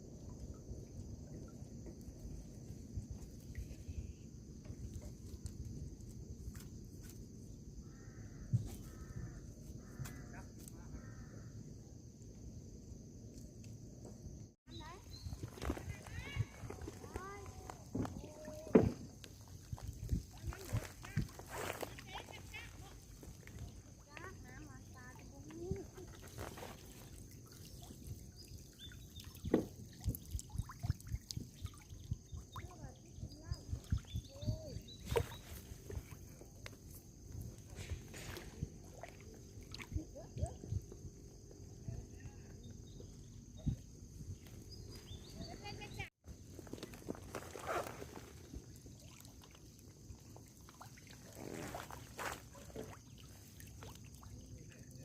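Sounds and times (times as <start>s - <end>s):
water sloshing and dripping: 0.0s - 7.3s, 14.8s - 41.1s, 46.5s - 55.0s
insects droning: 0.0s - 55.0s
low knocks and splashes: 14.8s - 36.4s.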